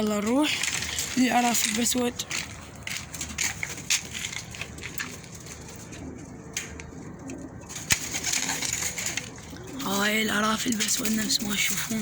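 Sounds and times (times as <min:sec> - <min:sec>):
pigeons cooing: 0:03.1 - 0:12.0.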